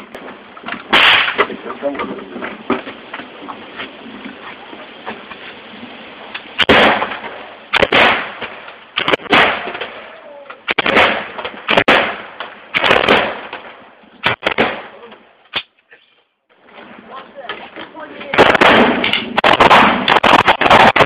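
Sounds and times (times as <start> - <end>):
gunshots echoing: 0.1 - 1.7, 6.6 - 15.6, 18.3 - 21.0.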